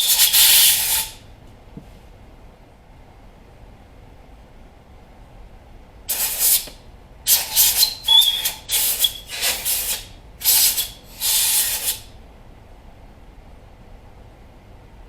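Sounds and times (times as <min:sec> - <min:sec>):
compressed air blow gun hissing: 0:00.0 - 0:01.2, 0:06.1 - 0:12.1.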